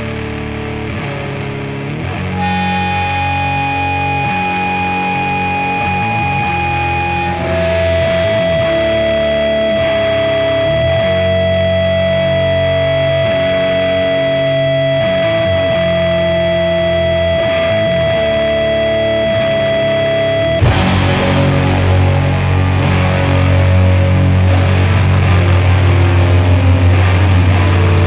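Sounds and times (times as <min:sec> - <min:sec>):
distorted electric guitar chords: 0:00.0 - 0:28.0
long held high note: 0:02.4 - 0:08.4, 0:20.6 - 0:24.4
full metal band playing: 0:20.6 - 0:25.0.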